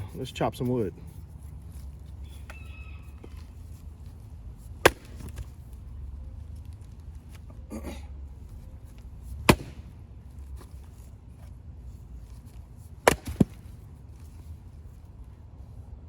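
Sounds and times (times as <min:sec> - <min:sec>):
axe chopping log: 0:04.7 - 0:05.5, 0:09.3 - 0:10.0, 0:13.0 - 0:13.8.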